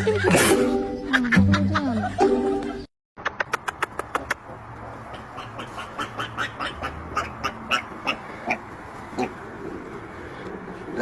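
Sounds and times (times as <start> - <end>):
duck quacking: 4.1 - 9.4.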